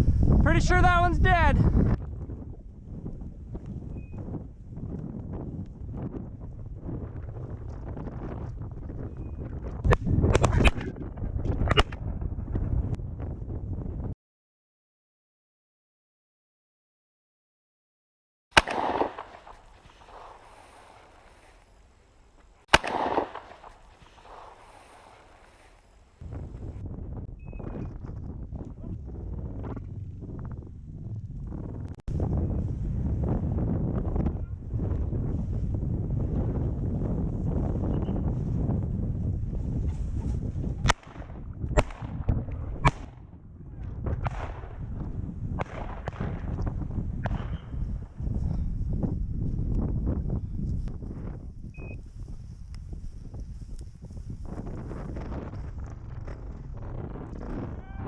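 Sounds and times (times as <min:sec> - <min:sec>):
wind on microphone: 0:00.0 - 0:14.2, 0:22.8 - 0:58.0
sharp cracks: 0:09.8 - 0:12.0, 0:18.5 - 0:26.2, 0:40.8 - 0:43.3, 0:45.6 - 0:47.7
shotgun shots with echo: 0:18.6 - 0:21.4, 0:22.7 - 0:25.7, 0:40.8 - 0:43.2, 0:44.2 - 0:44.8, 0:45.6 - 0:46.5, 0:47.2 - 0:47.8.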